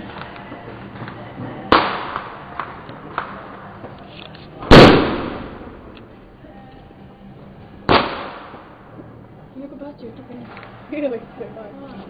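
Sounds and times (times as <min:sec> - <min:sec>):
firecracker bangs: 0:01.7 - 0:03.4, 0:04.6 - 0:05.9, 0:07.9 - 0:08.8.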